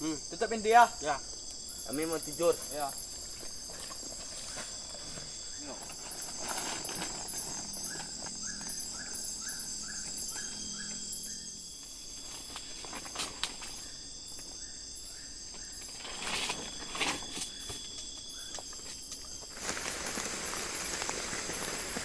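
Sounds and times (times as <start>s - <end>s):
night insects chirping: 0.0s - 22.0s
repeated chirping call: 7.2s - 11.6s.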